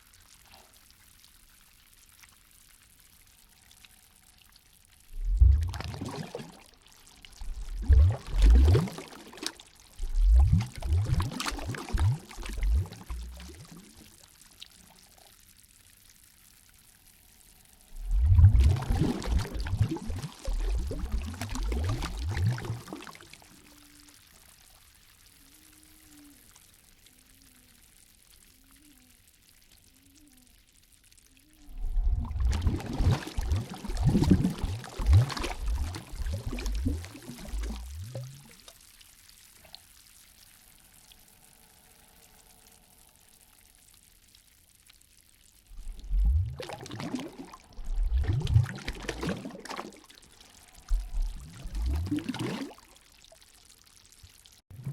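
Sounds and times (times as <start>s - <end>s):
water sloshing and gurgling: 4.8s - 15.1s, 17.7s - 24.7s, 31.6s - 43.1s, 45.6s - 54.9s.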